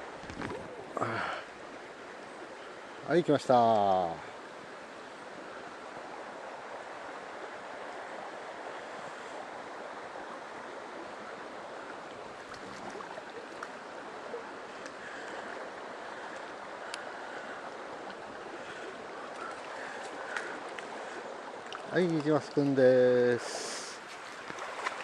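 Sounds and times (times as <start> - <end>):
stream water rushing: 0.0 - 25.0
faint sharp clicks: 14.8 - 15.4, 16.3 - 17.1, 19.3 - 20.9.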